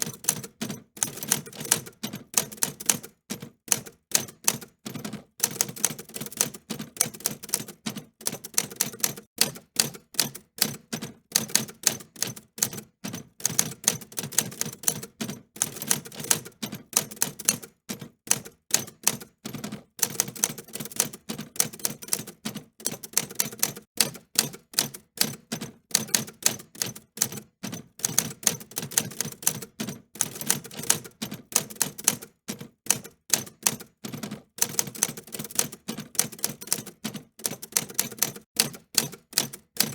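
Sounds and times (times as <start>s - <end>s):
typewriter key clacks: 20.0s - 39.9s.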